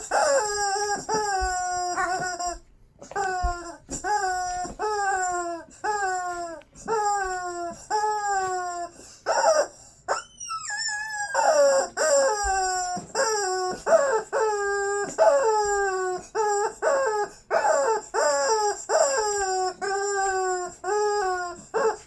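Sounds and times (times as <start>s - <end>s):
squeaky dog toy squeaking: 0.0s - 22.0s.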